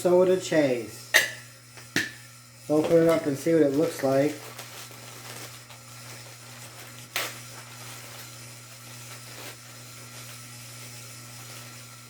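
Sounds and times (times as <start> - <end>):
ceiling fan humming: 0.0 - 12.0
packaging handling noise: 2.7 - 10.4.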